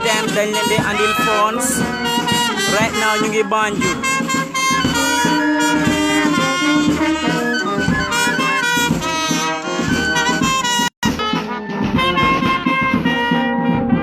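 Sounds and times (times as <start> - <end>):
brass music over a beat: 0.0 - 14.0.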